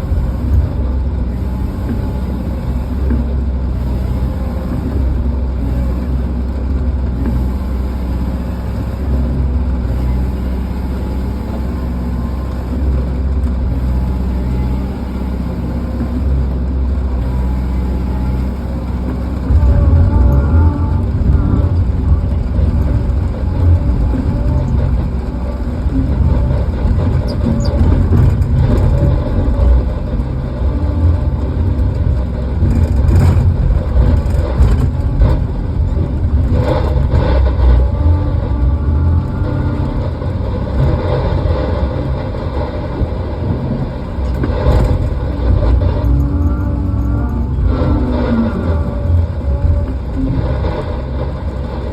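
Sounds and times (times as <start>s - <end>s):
diesel engine rumbling: 0.0s - 51.9s.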